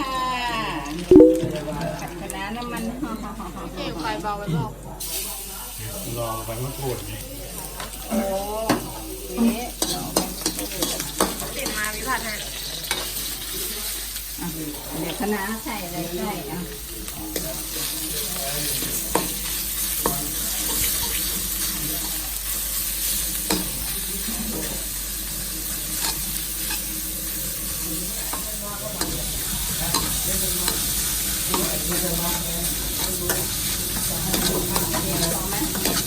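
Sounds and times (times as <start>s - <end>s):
oil sizzling in a wok: 2.3s - 36.0s.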